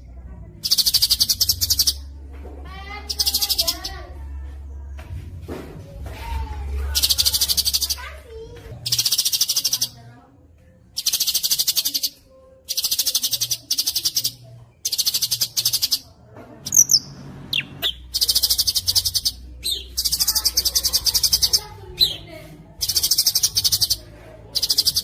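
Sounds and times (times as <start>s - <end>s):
songbird singing trills: 0.6s - 2.1s, 7.0s - 8.0s, 8.8s - 10.0s, 11.0s - 16.0s, 16.6s - 25.0s.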